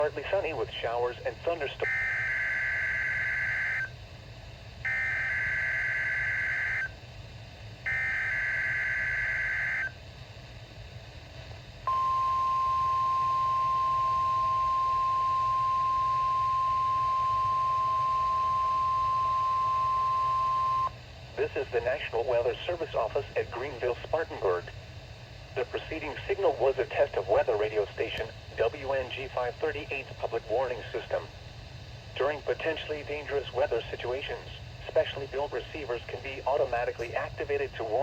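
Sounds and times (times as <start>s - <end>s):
steady alarm tone: 1.8s - 4.0s, 4.8s - 7.0s, 7.8s - 10.0s, 11.8s - 21.0s
data tone bursts: 4.9s - 6.9s, 11.9s - 21.0s.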